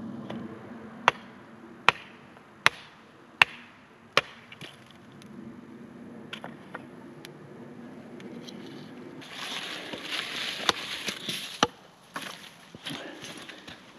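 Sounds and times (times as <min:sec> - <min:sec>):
axe chopping firewood: 0:01.0 - 0:01.3, 0:01.9 - 0:04.9, 0:09.8 - 0:13.8.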